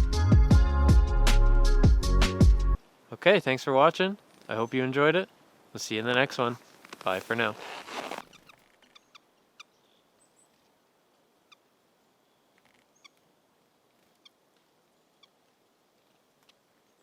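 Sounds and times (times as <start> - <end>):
faint hiss: 2.8 - 8.6.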